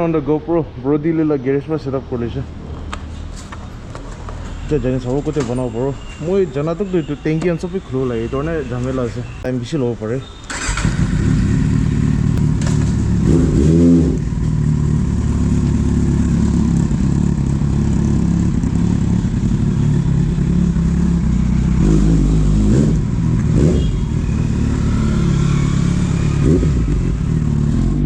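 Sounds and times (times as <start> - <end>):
engine throttle blips: 10.4 - 28.0
motorcycle engine idling: 10.5 - 13.4, 14.2 - 21.8.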